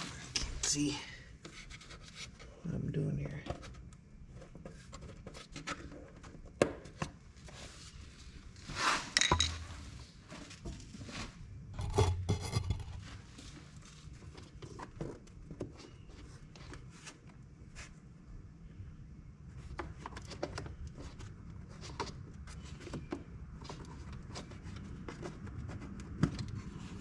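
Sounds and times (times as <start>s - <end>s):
scraping and rubbing: 1.4s - 2.5s, 7.4s - 15.2s
tools clicking and knocking: 9.2s - 9.8s.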